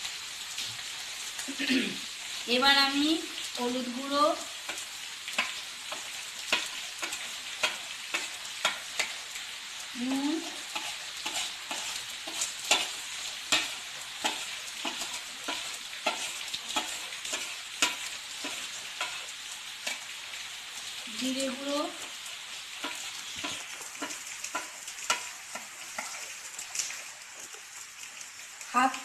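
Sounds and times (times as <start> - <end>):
potatoes sizzling in a pan: 0.0 - 29.0
utensil scraping a pan: 10.4 - 20.1.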